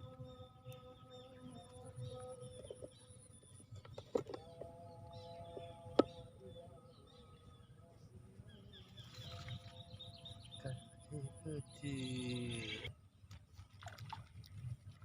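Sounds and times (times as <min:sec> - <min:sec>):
insects calling: 0:10.6 - 0:12.9.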